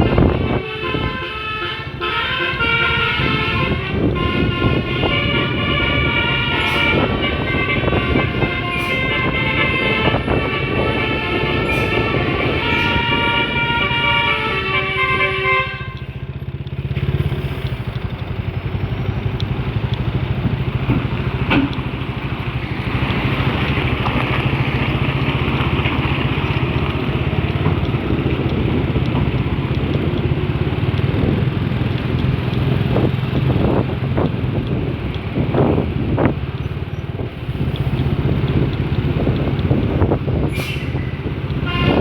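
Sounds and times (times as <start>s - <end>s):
musical air horn melody: 0.0s - 16.3s, 40.5s - 42.0s
truck engine running: 0.0s - 42.0s.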